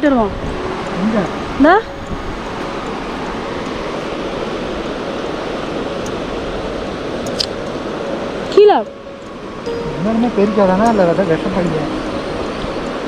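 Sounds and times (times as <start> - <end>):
fast river rushing: 0.1 - 13.0.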